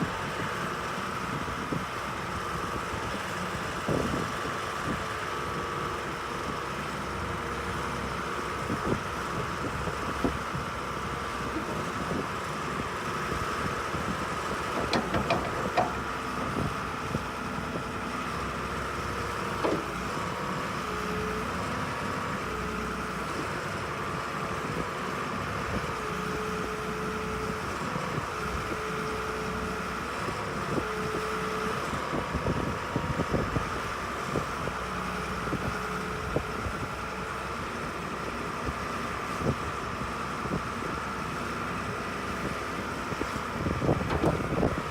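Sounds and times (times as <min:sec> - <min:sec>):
excavator diesel engine running: 0:00.0 - 0:44.9
short knocks: 0:14.6 - 0:16.7, 0:19.4 - 0:20.0.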